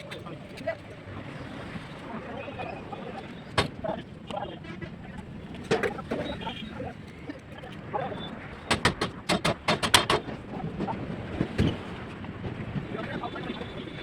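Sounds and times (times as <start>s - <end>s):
sharp knocks: 8.7s - 10.3s.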